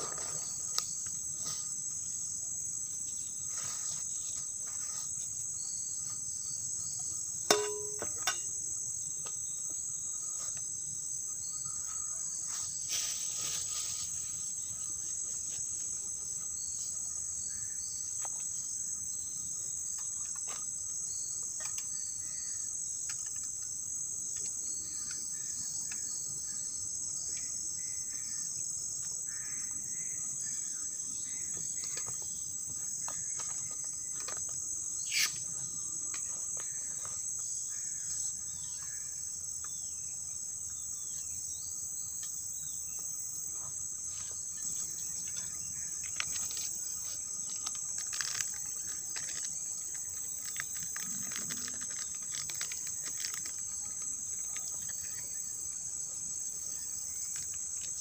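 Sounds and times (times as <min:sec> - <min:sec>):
sharp knock: 0:07.5 - 0:08.4
insects shrilling: 0:11.2 - 0:18.8, 0:33.2 - 0:39.2, 0:43.6 - 0:58.0.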